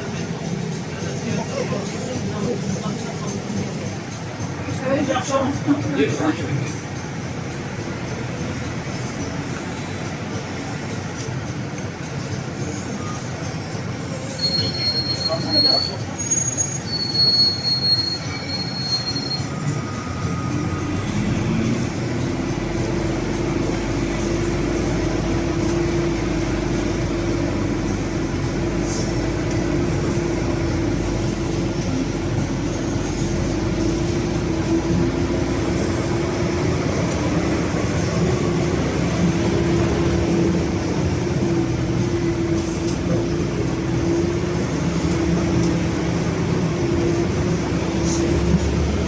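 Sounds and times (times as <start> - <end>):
vehicle engine droning: 19.4 - 49.0.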